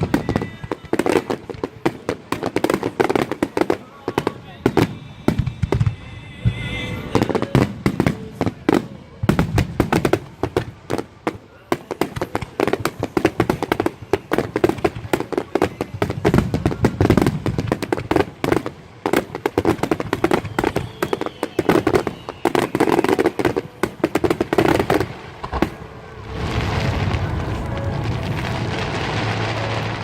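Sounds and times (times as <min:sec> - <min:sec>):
fireworks crackling pops and bangs: 0:00.0 - 0:30.0.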